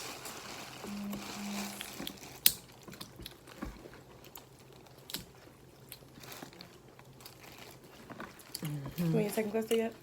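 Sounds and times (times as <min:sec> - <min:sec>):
crab shell cracking by hand: 0:02.0 - 0:06.6.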